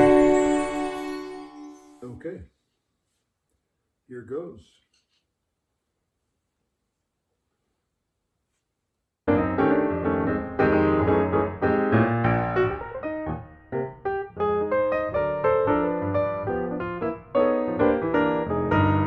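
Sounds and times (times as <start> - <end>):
piano music: 0.0 - 2.1, 9.3 - 19.0.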